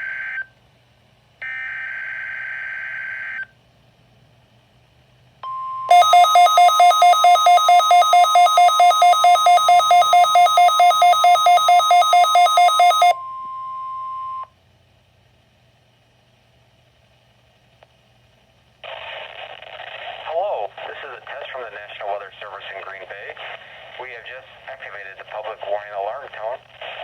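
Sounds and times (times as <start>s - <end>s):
steady warning alarm tone: 5.5s - 13.2s
buzzy pulsing beep: 5.9s - 13.2s.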